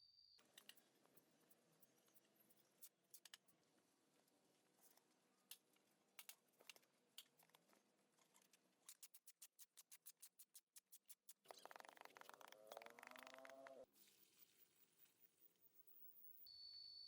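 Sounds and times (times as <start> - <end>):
rapid small sharp clicks: 0.4 - 3.5, 5.5 - 13.9
faint clicks and taps: 4.8 - 13.9.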